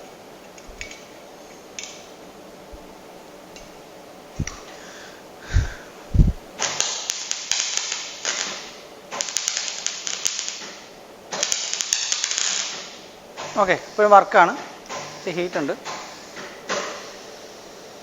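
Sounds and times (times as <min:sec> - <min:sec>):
welding arc crackling: 0:05.5 - 0:12.8.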